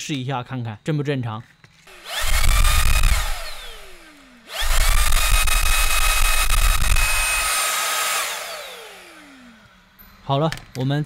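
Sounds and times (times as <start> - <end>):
vacuum cleaner motor whining: 1.9 - 9.9.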